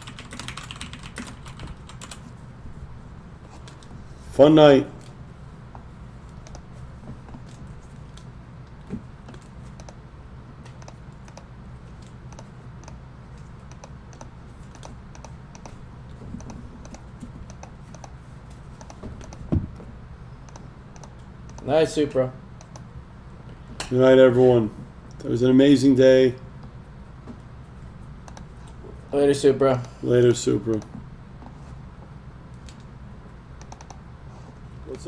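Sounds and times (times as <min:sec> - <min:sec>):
keyboard typing: 0:00.0 - 0:02.4, 0:06.3 - 0:06.7, 0:07.4 - 0:10.0, 0:10.6 - 0:15.8, 0:16.4 - 0:19.5, 0:20.4 - 0:21.7, 0:28.2 - 0:28.8, 0:33.6 - 0:34.0
steady low hum: 0:00.0 - 0:35.0.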